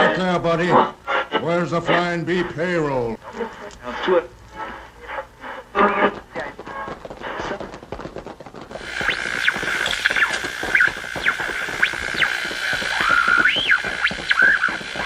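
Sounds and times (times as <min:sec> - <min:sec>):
radio static crackling: 0:00.0 - 0:15.0
steady high whistle: 0:08.9 - 0:15.0
swooping whistles: 0:09.0 - 0:15.0.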